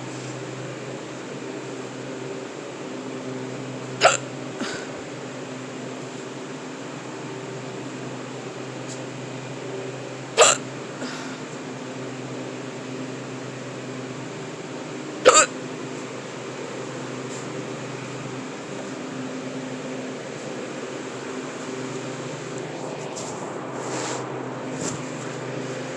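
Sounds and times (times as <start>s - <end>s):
refrigeration fans humming: 0.0s - 25.9s
person hiccuping: 4.0s - 4.9s, 10.4s - 10.7s, 15.2s - 15.6s.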